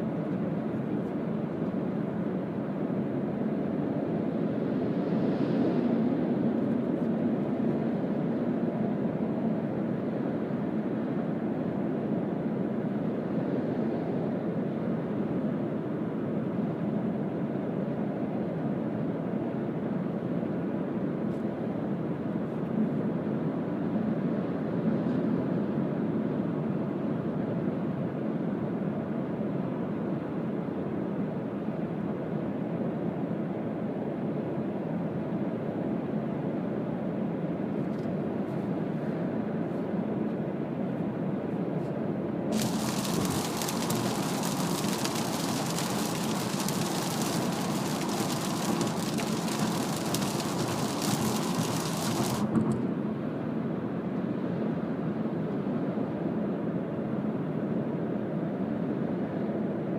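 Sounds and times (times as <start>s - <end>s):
car cabin road noise: 42.6s - 52.9s.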